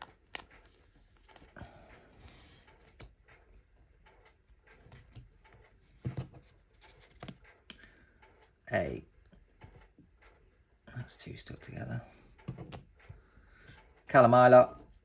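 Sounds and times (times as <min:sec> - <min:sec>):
cards rustling and clicking: 0:00.0 - 0:03.2.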